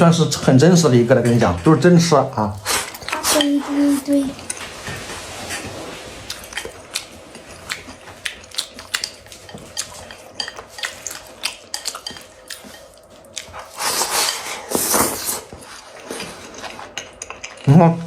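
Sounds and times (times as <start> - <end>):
utensils scraping a bowl: 2.6 - 6.1, 13.6 - 17.0.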